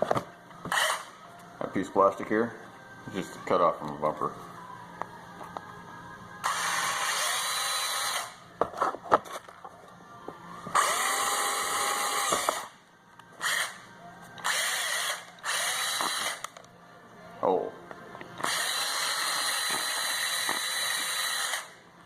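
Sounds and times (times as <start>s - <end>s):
cordless drill whining: 6.4s - 8.4s, 10.7s - 12.7s, 13.4s - 13.8s, 14.4s - 16.5s, 18.4s - 21.8s.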